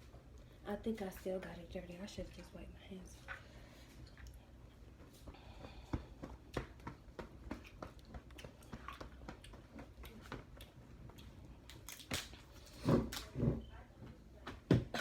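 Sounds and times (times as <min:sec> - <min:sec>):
chewing crab: 0:07.5 - 0:13.3.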